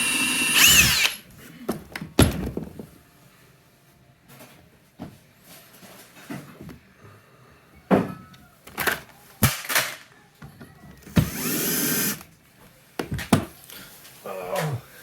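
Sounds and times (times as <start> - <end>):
cordless drill driving a screw: 0.0 - 1.2, 11.2 - 12.2.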